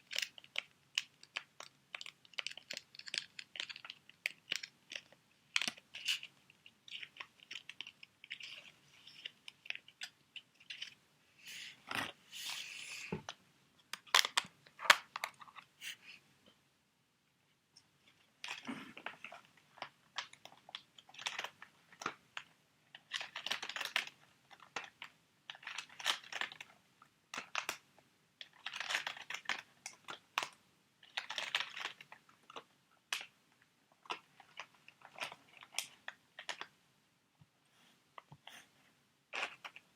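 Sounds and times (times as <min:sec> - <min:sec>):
plastic packets crinkling: 0:00.0 - 0:06.3, 0:06.9 - 0:11.0, 0:18.4 - 0:22.2, 0:23.0 - 0:26.7, 0:28.4 - 0:33.3, 0:34.0 - 0:36.7.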